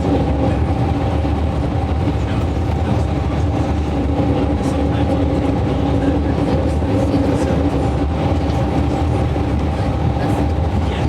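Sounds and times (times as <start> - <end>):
bus engine and road drone: 0.0 - 11.0.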